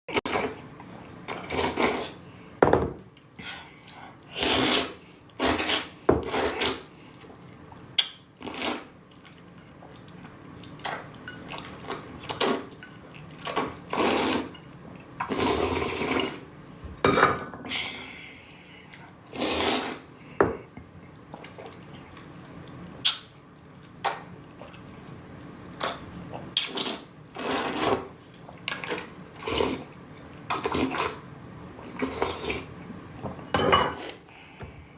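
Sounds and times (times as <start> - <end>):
noodles being slurped: 1.3 - 2.2, 4.3 - 7.2, 8.0 - 9.3, 13.3 - 14.5, 15.2 - 16.5, 19.3 - 20.1, 25.8 - 31.2.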